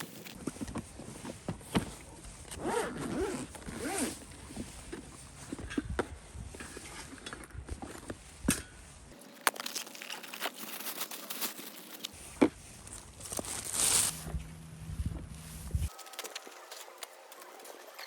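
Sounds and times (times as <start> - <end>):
gear being handled: 9.1 - 12.2.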